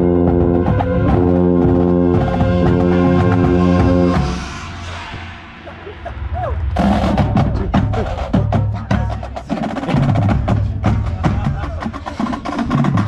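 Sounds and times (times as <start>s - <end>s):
low brass bugle notes: 0.0s - 5.6s
fast percussion hits: 0.0s - 13.0s.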